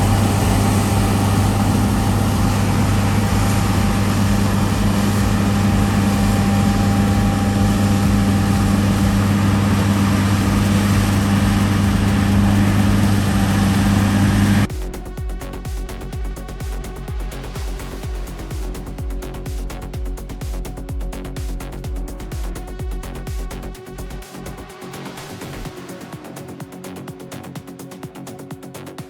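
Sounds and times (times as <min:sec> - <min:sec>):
large diesel engine humming: 0:00.0 - 0:14.7.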